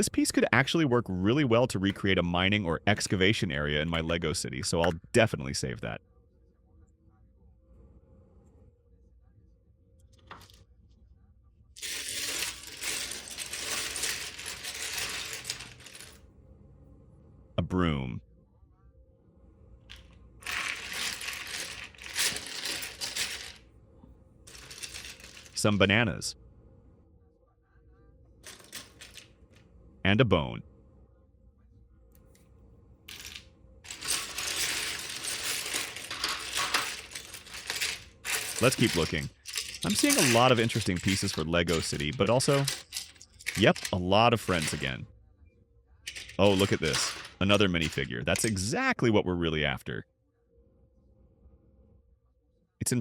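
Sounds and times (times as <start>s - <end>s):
plastic bricks rattling: 19.9s - 23.6s, 33.1s - 44.9s, 46.1s - 48.5s.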